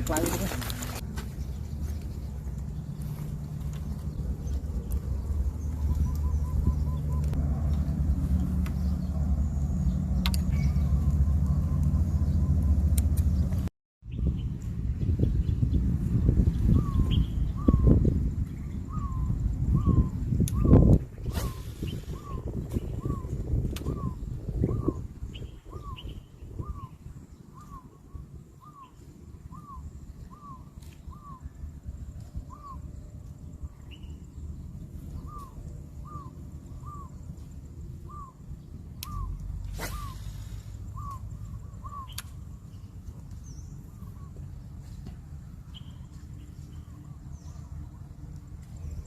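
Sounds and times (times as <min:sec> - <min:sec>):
steady low rumble: 0:00.0 - 0:49.0
bird calling short hooked note: 0:39.0 - 0:41.2.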